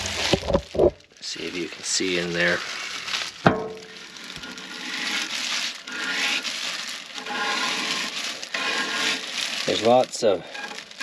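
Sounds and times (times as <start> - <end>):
rasping scraping inside metal tank: 4.4 - 9.8.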